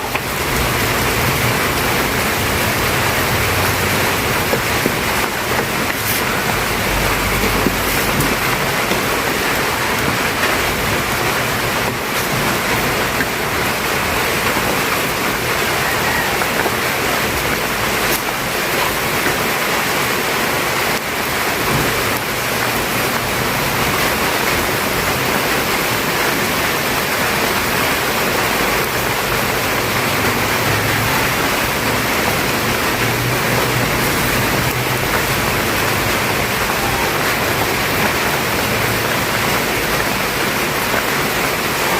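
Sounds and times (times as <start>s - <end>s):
soup boiling: 0.0s - 19.4s, 28.8s - 41.4s.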